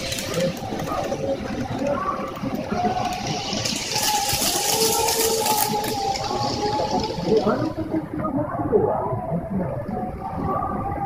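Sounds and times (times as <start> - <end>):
model train motor whine: 0.0 - 7.8
model train rolling hiss: 2.2 - 7.8.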